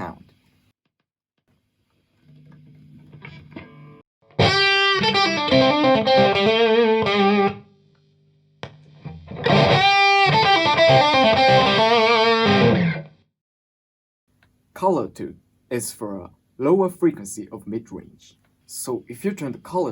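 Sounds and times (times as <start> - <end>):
faint amp hum: 1.9 - 4.0
electric guitar riff: 3.1 - 7.8, 8.6 - 13.3.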